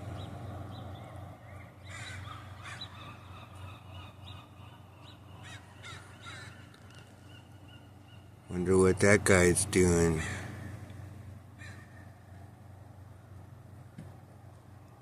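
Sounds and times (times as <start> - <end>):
steady low hum: 0.0 - 15.0
birds cawing: 1.8 - 8.9, 10.0 - 12.4.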